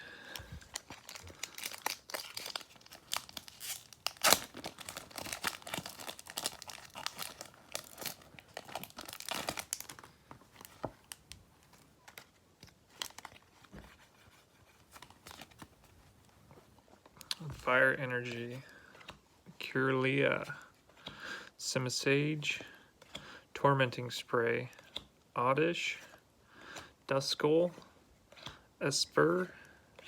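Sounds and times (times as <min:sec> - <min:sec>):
foil wrapper crinkling: 0:00.3 - 0:11.3.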